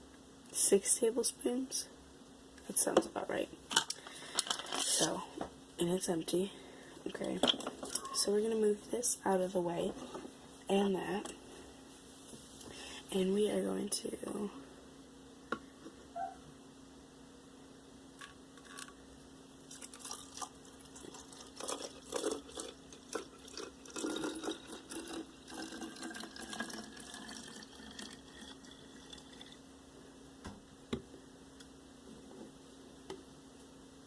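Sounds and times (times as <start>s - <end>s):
containers clicking and knocking: 3.7s - 5.1s
liquid pouring into a bottle: 19.7s - 29.6s.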